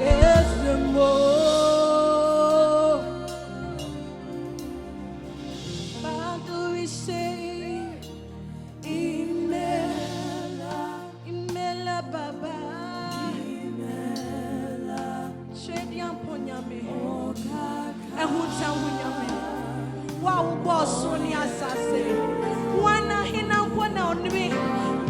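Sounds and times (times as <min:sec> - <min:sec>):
bass notes: 0:00.0 - 0:11.4
gospel voices singing: 0:00.0 - 0:25.0
keyboard chords: 0:00.0 - 0:25.0.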